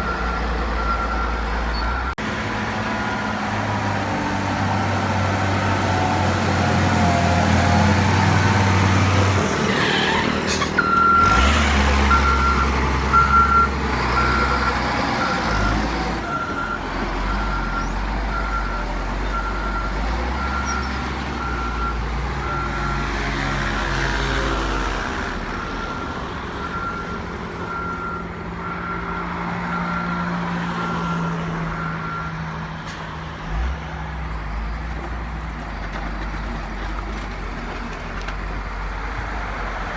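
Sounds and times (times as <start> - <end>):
diesel machinery running: 0.0 - 32.6
reversing alarm beeps: 0.1 - 2.1, 12.1 - 15.8.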